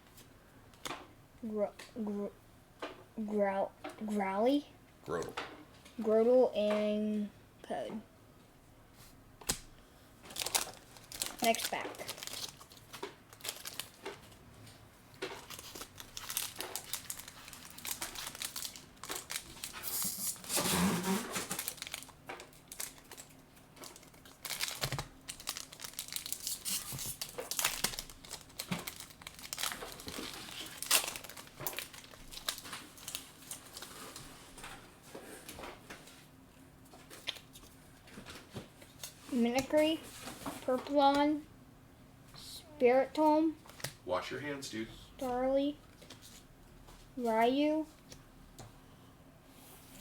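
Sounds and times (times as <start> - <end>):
foil wrapper crinkling and tearing: 10.3 - 14.3, 15.2 - 34.3.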